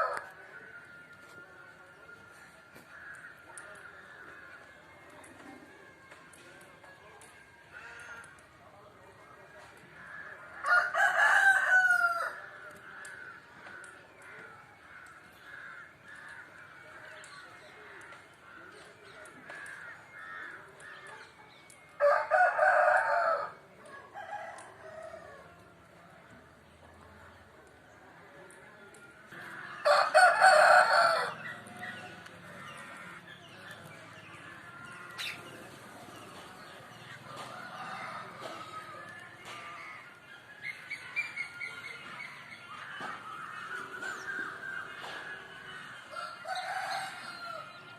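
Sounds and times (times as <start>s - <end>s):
chattering bird calls: 2.5s - 5.7s, 12.5s - 22.0s, 26.3s - 47.9s
rooster crowing: 10.6s - 12.4s, 29.8s - 31.4s.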